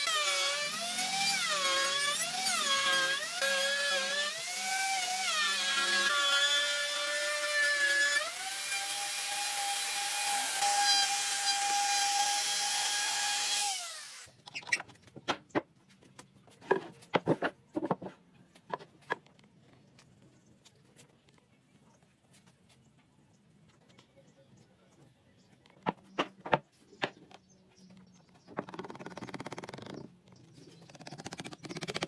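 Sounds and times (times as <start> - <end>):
power tool whining on wood: 0.0 - 14.3.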